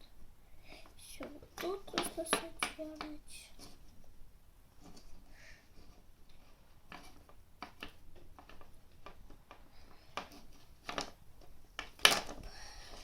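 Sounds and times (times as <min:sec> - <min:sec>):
plastic mould pieces clicking: 0:05.8 - 0:13.0.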